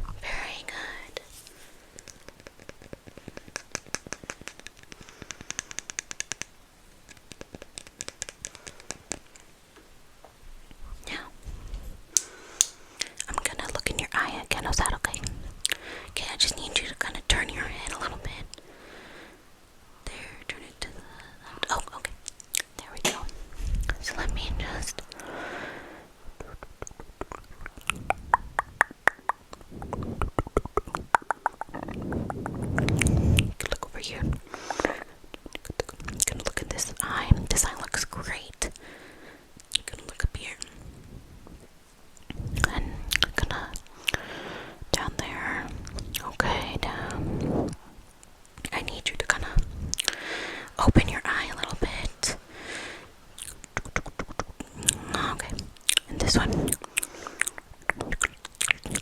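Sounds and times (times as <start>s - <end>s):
breathy hiss: 0.2s - 6.3s, 11.2s - 22.1s, 22.9s - 28.6s, 29.4s - 41.6s, 42.4s - 48.1s, 48.9s - 53.3s, 54.6s - 58.3s
light sharp tapping: 2.0s - 9.5s
sharp close-miked clicks: 2.0s - 9.5s.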